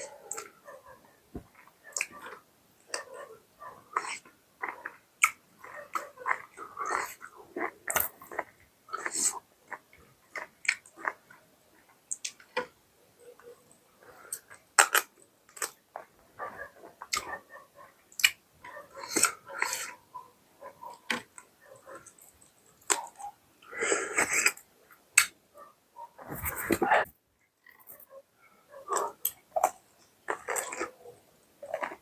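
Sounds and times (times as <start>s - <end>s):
wet chewing and lip smacks: 18.1s - 18.4s, 28.9s - 31.0s.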